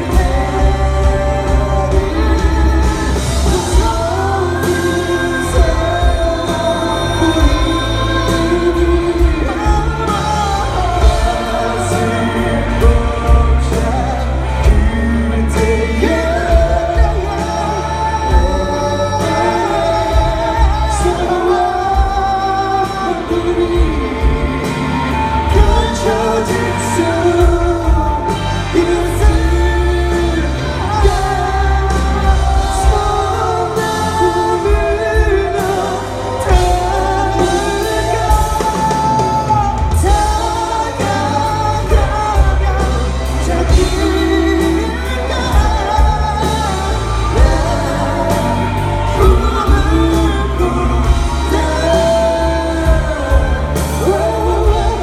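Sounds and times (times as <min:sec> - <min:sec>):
band with bass and drums: 0:00.0 - 0:55.0
voices singing pop song: 0:00.0 - 0:55.0.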